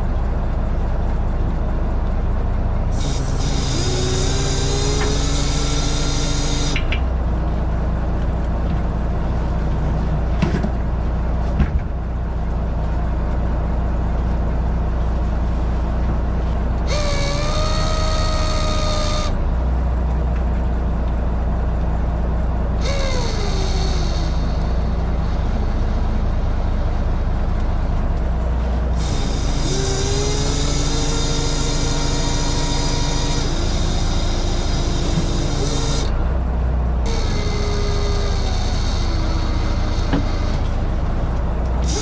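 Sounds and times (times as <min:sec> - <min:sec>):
heavy machinery engine running: 0:00.0 - 0:42.0
whine bending in pitch: 0:02.8 - 0:07.0, 0:16.9 - 0:19.5, 0:22.8 - 0:36.2, 0:37.0 - 0:42.0.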